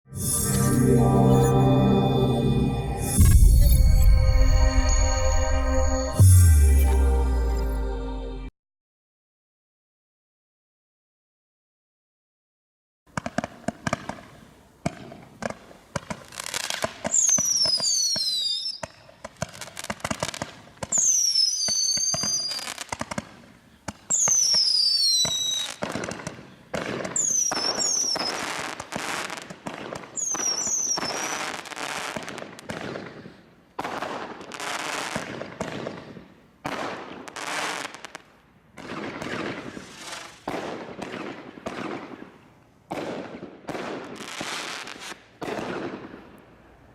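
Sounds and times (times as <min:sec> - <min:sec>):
firework whistles falling in pitch: 0:00.2 - 0:07.7, 0:16.6 - 0:19.0, 0:20.2 - 0:22.9, 0:24.1 - 0:26.0, 0:27.2 - 0:29.4, 0:30.2 - 0:32.3
firework shots and bangs: 0:13.1 - 0:38.2, 0:38.8 - 0:46.4
firework hissing bursts: 0:39.6 - 0:40.5.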